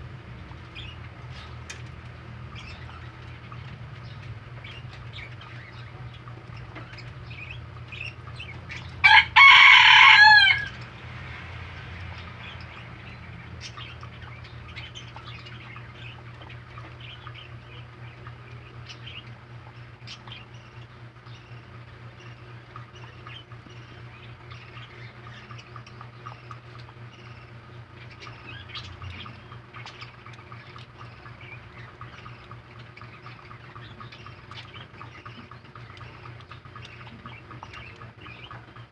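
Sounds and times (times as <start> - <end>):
low hum: 0.0 - 38.9
rabbits chewing vegetables: 0.0 - 38.9
loud animal call: 9.0 - 12.4.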